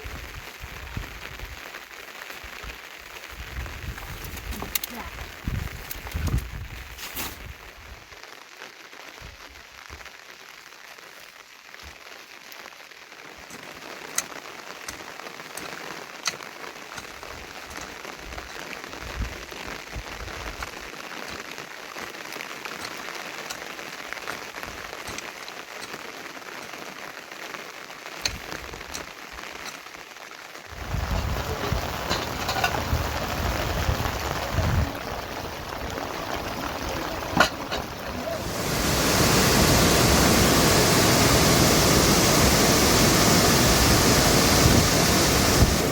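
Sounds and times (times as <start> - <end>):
steady rain: 0.0 - 45.9
single raindrops: 30.7 - 45.9.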